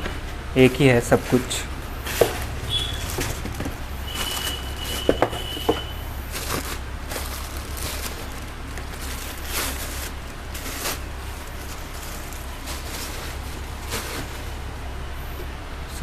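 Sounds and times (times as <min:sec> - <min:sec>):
knocks on cardboard packaging: 0:05.0 - 0:05.9.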